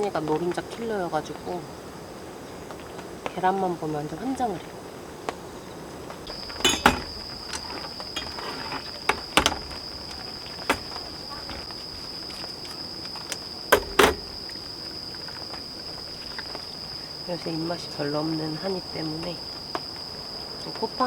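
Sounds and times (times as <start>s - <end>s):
utensils clicking and knocking: 6.3s - 12.2s, 13.2s - 14.6s
high-pitched insect trill: 6.3s - 21.0s.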